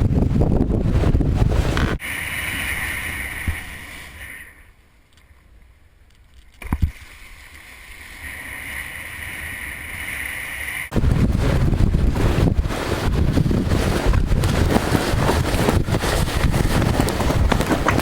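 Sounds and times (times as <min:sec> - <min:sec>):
wind buffeting microphone: 0:00.0 - 0:03.8, 0:10.9 - 0:18.0.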